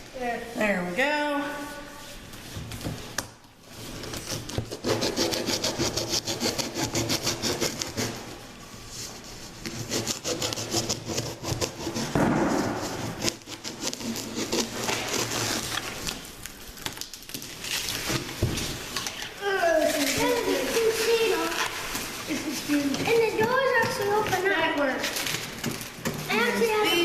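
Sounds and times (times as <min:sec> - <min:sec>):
hand saw cutting cardboard: 0:04.0 - 0:08.3, 0:09.2 - 0:16.1.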